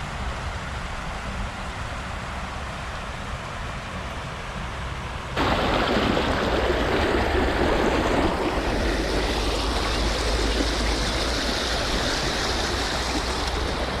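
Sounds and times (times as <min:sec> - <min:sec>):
stream water rushing: 0:05.4 - 0:14.0.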